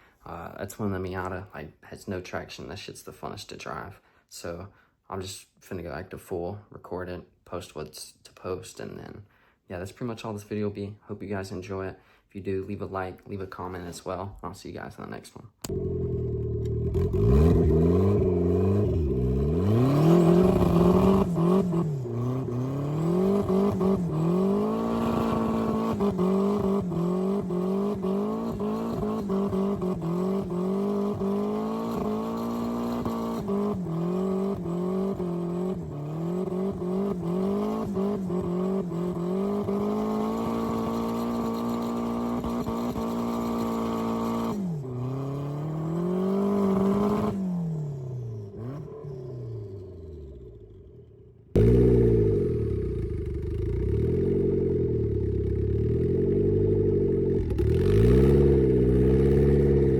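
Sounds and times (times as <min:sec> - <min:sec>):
car engine accelerating hard: 0:15.6 - 0:50.6, 0:56.3 - 0:59.9.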